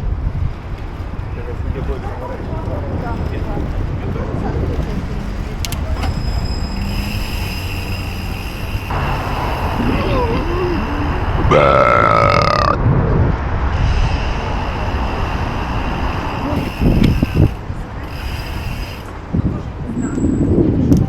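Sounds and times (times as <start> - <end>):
street traffic: 0.0 - 21.0
person belching: 11.5 - 12.8.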